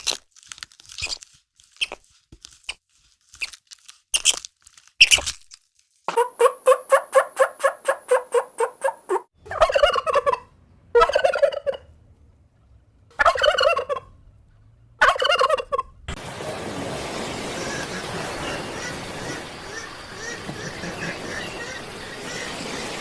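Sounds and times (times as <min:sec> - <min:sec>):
turkey gobbling: 0:06.1 - 0:11.9, 0:13.1 - 0:14.1, 0:15.0 - 0:15.9, 0:17.4 - 0:23.0.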